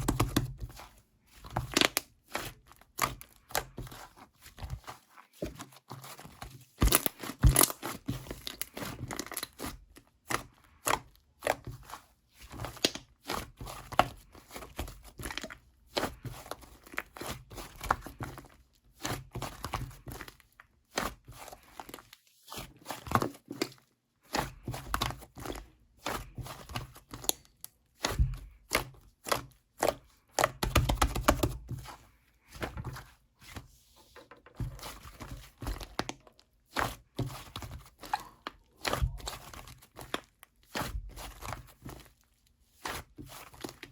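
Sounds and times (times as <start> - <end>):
slime crackling and popping: 6.8 - 9.6.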